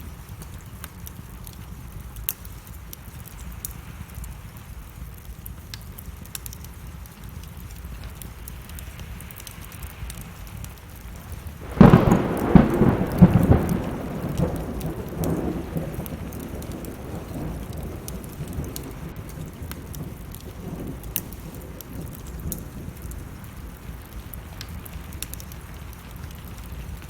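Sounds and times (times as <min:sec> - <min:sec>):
steady rain: 0:00.0 - 0:27.0
wood fire crackling: 0:00.0 - 0:27.0
thunder rumbling: 0:11.6 - 0:27.0.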